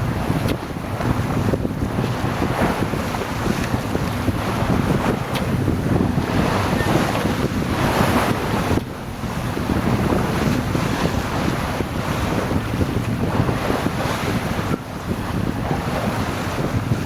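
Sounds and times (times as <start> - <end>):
water splashing along boat hull: 0.0 - 17.0
wind buffeting microphone: 0.0 - 17.0.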